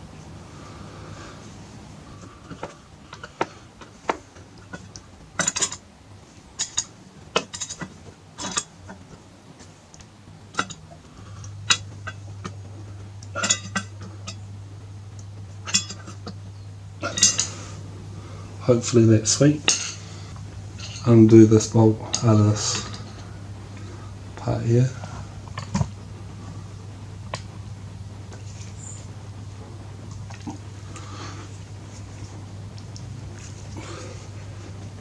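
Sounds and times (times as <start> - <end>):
faint low hum: 0.0 - 35.0
metal tools clinking: 13.2 - 14.4, 15.2 - 16.4, 17.0 - 17.8, 18.5 - 23.3.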